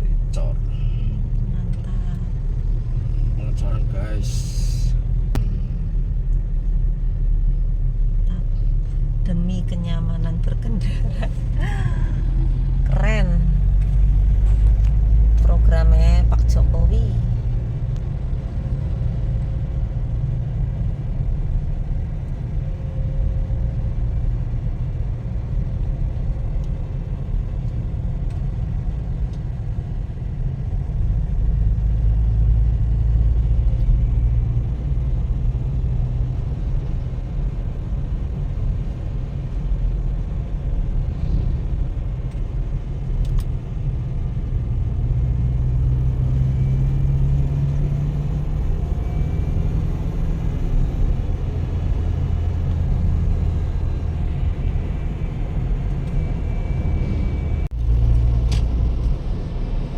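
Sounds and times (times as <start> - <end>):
vehicle engine and road noise: 0.0 - 59.9.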